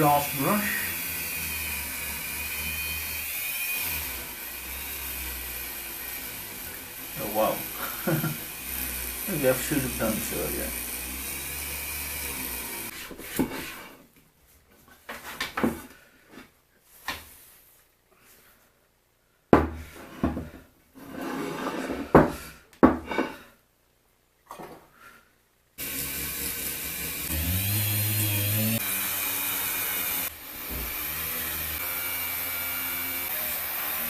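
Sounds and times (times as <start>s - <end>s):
rotary tool wire brush running: 0.0s - 13.0s, 25.8s - 30.3s.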